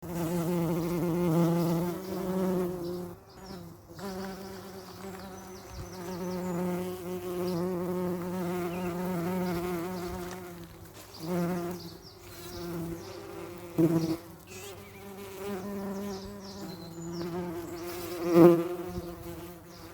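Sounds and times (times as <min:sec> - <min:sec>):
bees buzzing: 0:00.0 - 0:19.9.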